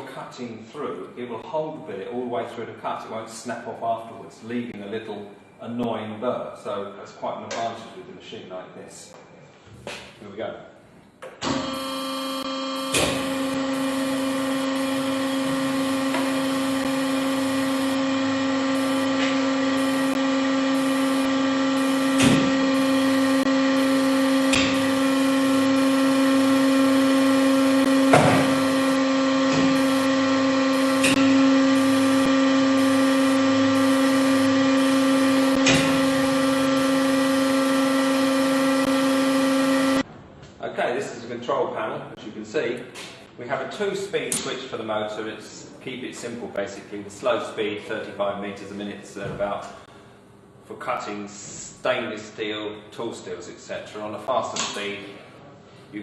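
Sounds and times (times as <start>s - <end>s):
band saw motor humming: 11.5s - 40.1s.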